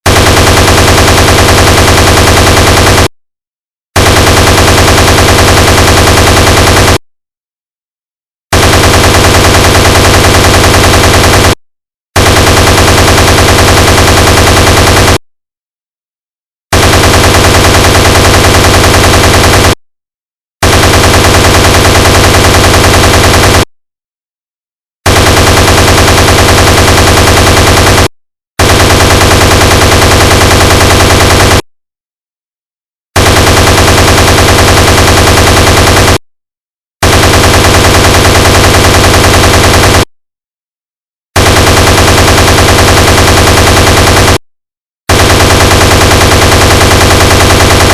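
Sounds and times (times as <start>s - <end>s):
heavy machine gun automatic fire: 0.0s - 3.1s, 4.0s - 7.0s, 8.5s - 11.6s, 12.2s - 15.2s, 16.7s - 19.8s, 20.6s - 23.7s, 25.1s - 31.7s, 33.2s - 36.2s, 37.0s - 40.1s, 41.4s - 44.4s, 45.1s - 47.9s.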